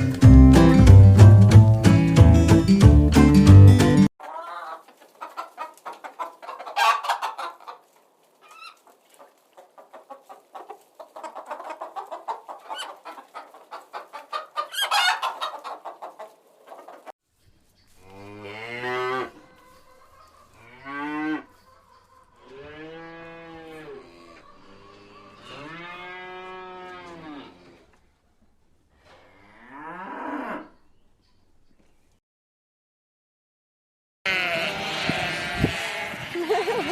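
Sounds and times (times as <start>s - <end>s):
hens cackling: 4.2s - 17.1s, 18.8s - 28.0s, 34.3s - 36.9s
hens clucking: 4.2s - 17.1s, 19.1s - 22.8s, 23.6s - 25.8s
cow mooing: 18.0s - 19.4s, 22.4s - 27.8s, 29.2s - 30.8s, 34.3s - 36.2s.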